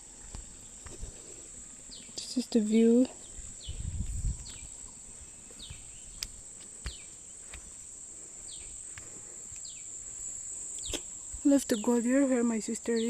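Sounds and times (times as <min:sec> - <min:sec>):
insects droning: 0:00.0 - 0:13.0
bird chirps: 0:03.2 - 0:06.3.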